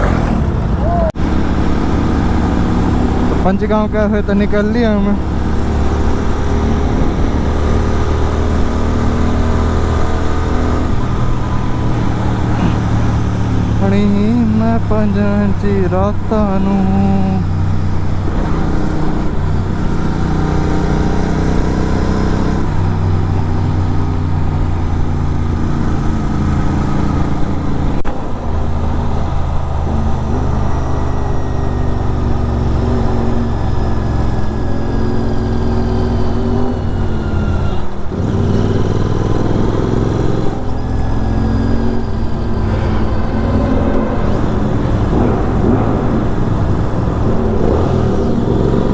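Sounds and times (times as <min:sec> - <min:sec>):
motorcycle engine running: 0:00.0 - 0:21.2, 0:38.6 - 0:48.9.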